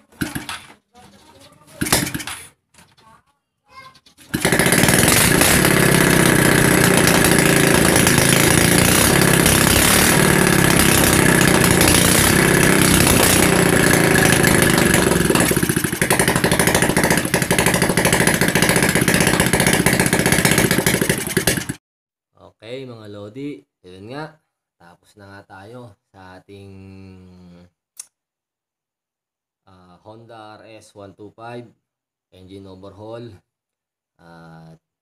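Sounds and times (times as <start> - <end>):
motorcycle engine running: 0.1 - 0.7, 1.8 - 2.5, 4.3 - 21.8.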